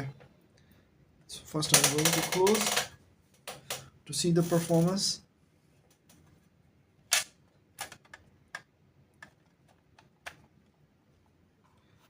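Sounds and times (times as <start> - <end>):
small parts clicking and tapping: 1.6 - 3.9, 7.1 - 10.5.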